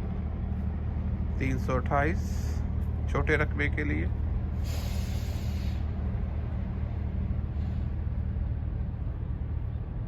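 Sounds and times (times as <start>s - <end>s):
engine humming: 0.0s - 10.0s
short hiss: 4.6s - 5.8s.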